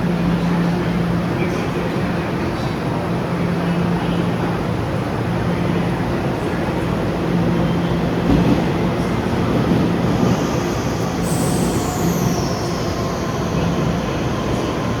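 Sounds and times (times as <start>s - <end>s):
train low rumble and hum: 0.0s - 15.0s.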